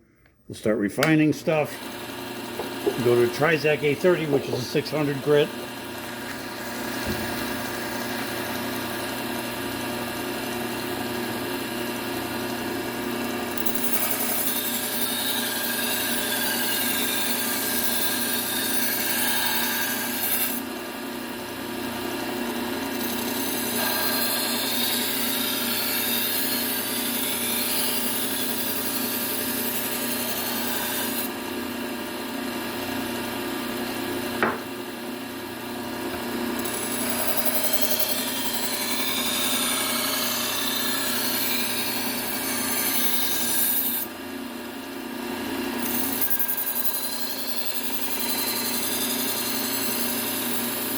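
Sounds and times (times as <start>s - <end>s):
belt sander motor hum: 1.0s - 31.4s, 36.0s - 44.2s
short knock: 7.0s - 7.5s, 34.4s - 34.7s
knife blade grinding on belt: 36.6s - 44.0s.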